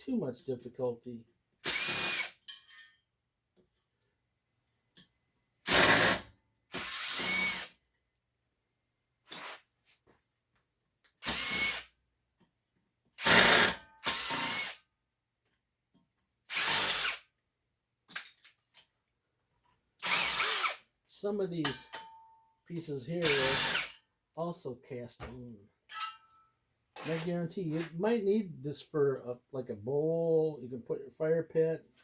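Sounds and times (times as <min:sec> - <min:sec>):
power drill bursts: 0:01.6 - 0:02.4, 0:05.7 - 0:07.7, 0:11.2 - 0:11.9, 0:13.2 - 0:14.8, 0:16.5 - 0:17.2, 0:20.0 - 0:20.8, 0:23.2 - 0:23.9.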